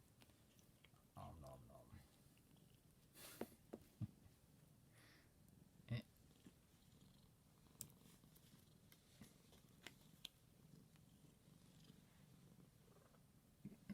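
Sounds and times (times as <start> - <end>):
cat purring: 0.0 - 3.4, 4.1 - 13.9.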